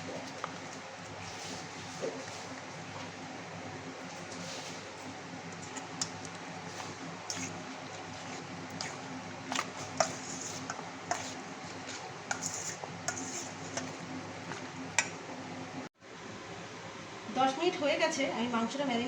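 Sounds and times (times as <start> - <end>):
chicken being mixed in marinade: 5.5 - 15.3.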